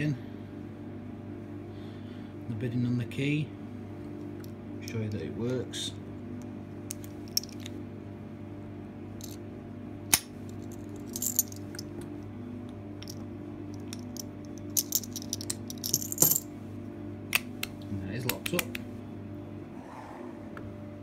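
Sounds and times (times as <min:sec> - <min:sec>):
steady low hum: 0:00.0 - 0:21.0
keys jingling: 0:10.6 - 0:11.9, 0:13.9 - 0:16.5.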